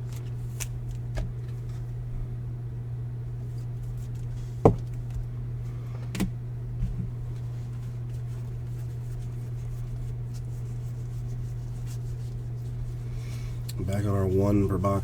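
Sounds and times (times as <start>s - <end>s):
steady low hum: 0.0s - 15.0s
card holders knocking on table: 4.6s - 4.9s.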